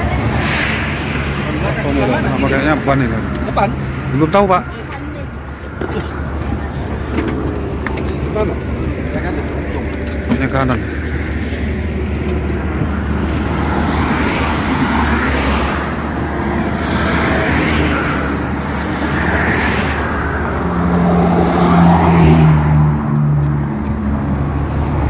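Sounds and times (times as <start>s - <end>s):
heavy vehicle passing: 0.0s - 25.0s
vehicles passing by: 0.0s - 25.0s
steady low engine hum: 1.5s - 15.2s.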